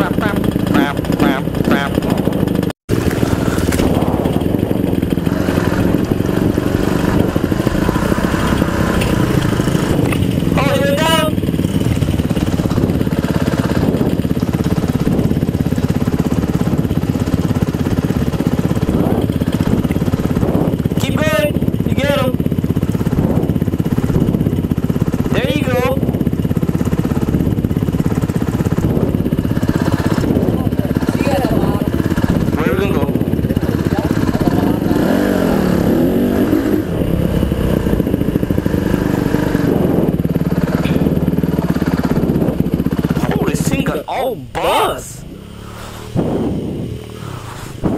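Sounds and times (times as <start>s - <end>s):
dirt bike engine running: 0.0s - 47.9s.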